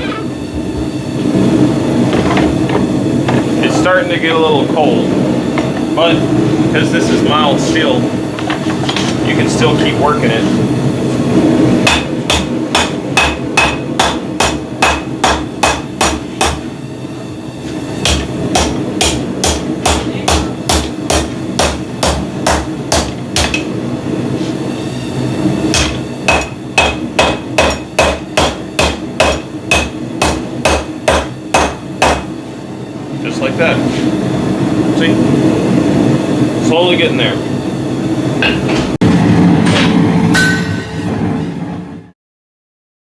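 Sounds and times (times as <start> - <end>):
hammer striking steel on anvil: 11.8 - 16.7, 18.0 - 23.7, 25.7 - 32.3, 39.6 - 41.2.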